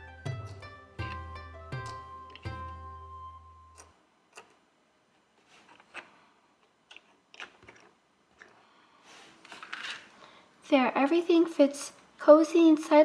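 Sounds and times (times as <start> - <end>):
music note: 0.0 - 3.8.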